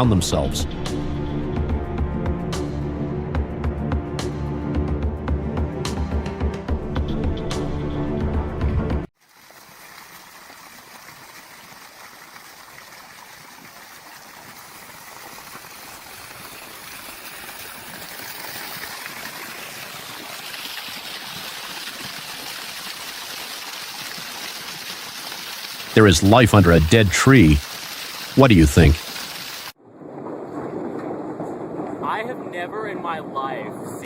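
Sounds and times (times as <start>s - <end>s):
stream flowing: 9.2s - 29.8s
music track: 26.0s - 27.6s.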